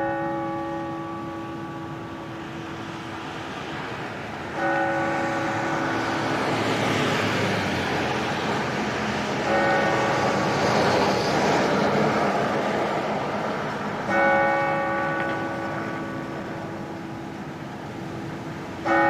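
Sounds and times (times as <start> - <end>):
clock bell striking: 0.0 - 3.2, 4.4 - 7.5, 9.4 - 11.1, 14.0 - 19.0
passing car traffic: 0.0 - 19.0.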